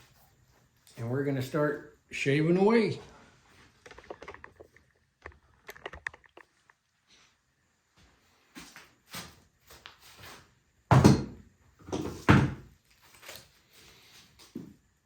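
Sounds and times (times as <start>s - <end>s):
heavy knocks on wood: 10.9s - 12.7s.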